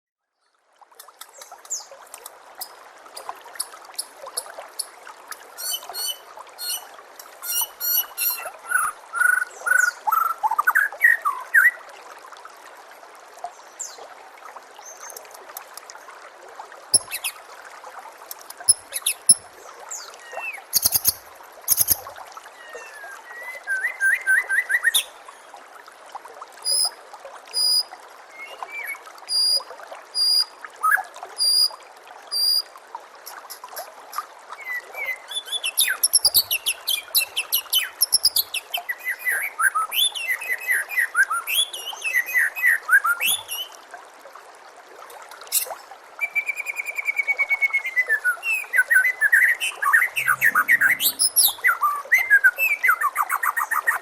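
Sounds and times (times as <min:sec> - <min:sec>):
running water trickling: 0:00.3 - 0:54.0
bird singing: 0:48.5 - 0:53.0.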